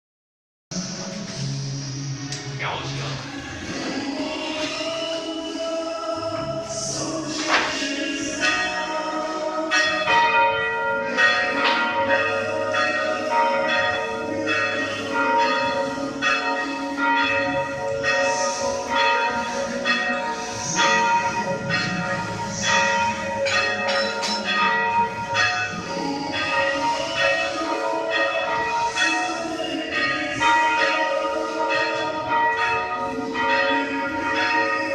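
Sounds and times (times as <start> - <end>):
church bells ringing: 7.8 - 34.9.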